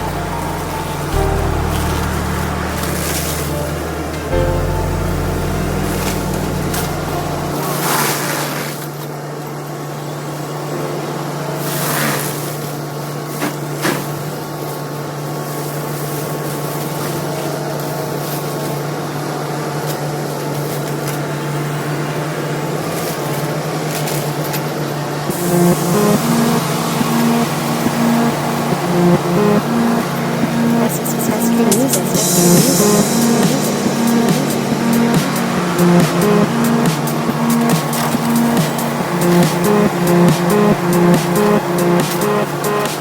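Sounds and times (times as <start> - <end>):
excavator engine droning: 0.0 - 9.3, 24.2 - 43.0.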